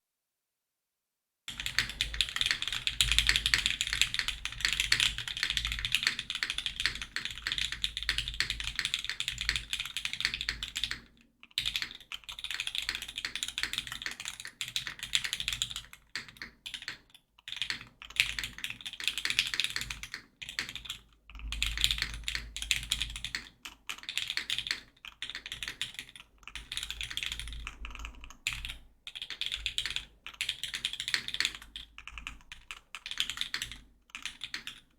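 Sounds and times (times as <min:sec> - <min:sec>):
mechanical keyboard typing: 0:01.5 - 0:34.9.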